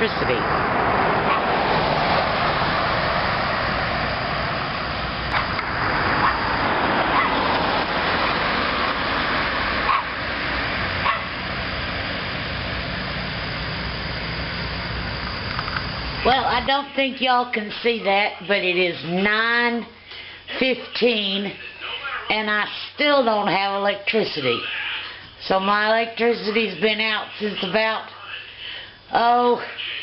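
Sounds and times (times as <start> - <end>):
steady rushing noise: 0.0 - 19.5
dog barking: 7.1 - 7.4, 9.8 - 10.1, 11.0 - 11.3.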